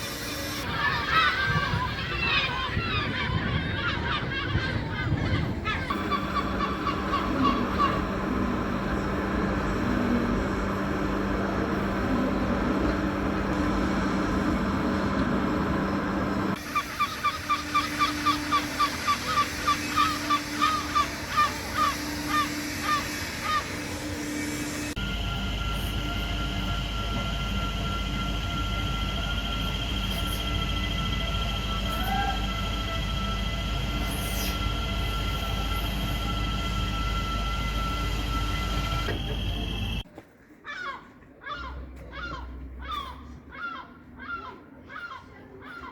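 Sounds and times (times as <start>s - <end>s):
mechanical rumble: 0.0s - 40.1s
gull calling: 0.6s - 9.0s, 16.5s - 23.9s, 40.7s - 45.9s
high whining tones: 4.5s - 40.1s.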